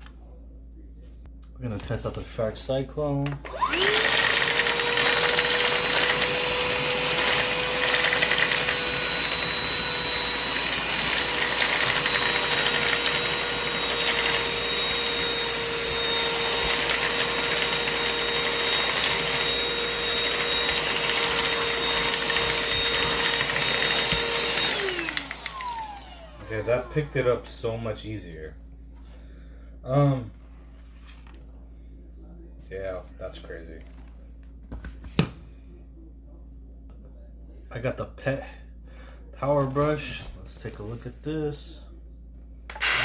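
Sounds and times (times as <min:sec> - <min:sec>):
handheld vacuum motor whine: 0:03.4 - 0:27.6, 0:42.7 - 0:43.0.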